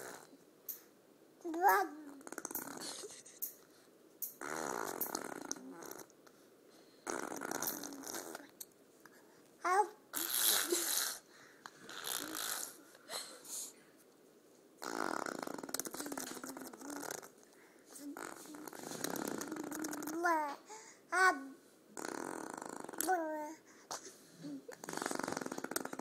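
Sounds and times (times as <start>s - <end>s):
baby blowing raspberries: 4.4s - 6.1s, 7.0s - 8.5s, 10.1s - 12.9s, 14.8s - 17.3s, 18.0s - 20.9s, 22.0s - 26.0s.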